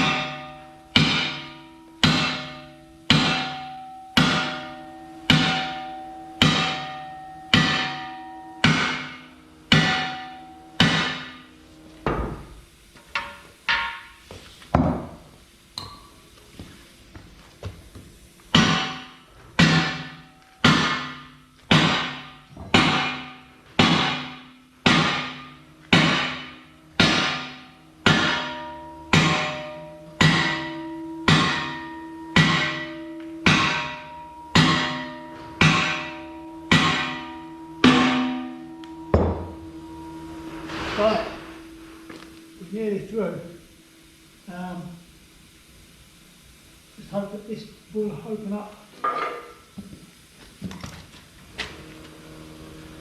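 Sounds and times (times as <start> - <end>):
hammer striking metal with ringing: 0.0 - 11.5, 13.1 - 14.2, 18.5 - 41.8.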